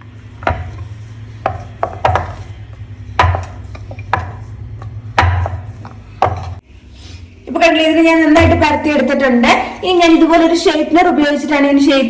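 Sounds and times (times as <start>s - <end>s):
rolling pin rumbling on dough: 0.0s - 6.6s
rolling pin knocking board: 0.4s - 2.5s, 3.2s - 6.6s.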